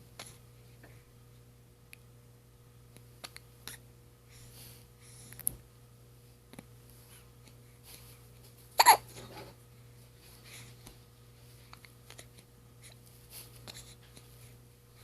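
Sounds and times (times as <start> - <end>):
baby hiccupping: 8.8 - 9.1.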